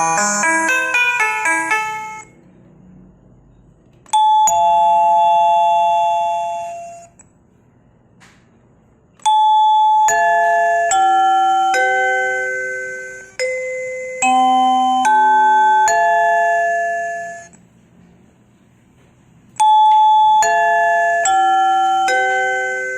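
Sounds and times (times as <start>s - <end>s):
doorbell chimes: 0.0s - 2.3s, 4.1s - 7.1s, 9.2s - 17.6s, 19.6s - 22.9s.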